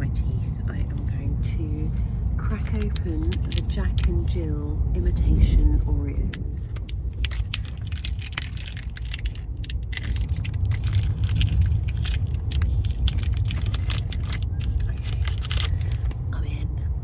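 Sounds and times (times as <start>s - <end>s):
moving train rumble: 0.0s - 17.0s
plastic wrapper crinkling: 2.6s - 4.2s, 6.7s - 16.2s.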